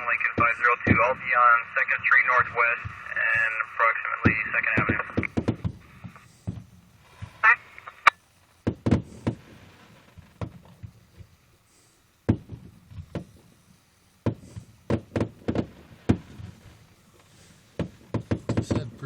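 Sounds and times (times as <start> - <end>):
police scanner squelch: 0.0 - 6.3, 7.0 - 8.1.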